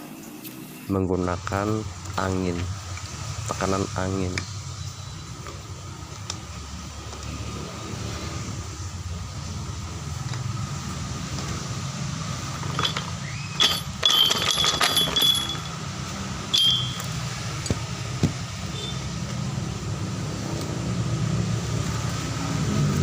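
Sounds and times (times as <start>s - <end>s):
metal parts clinking and jangling: 12.4s - 15.8s, 16.5s - 17.1s.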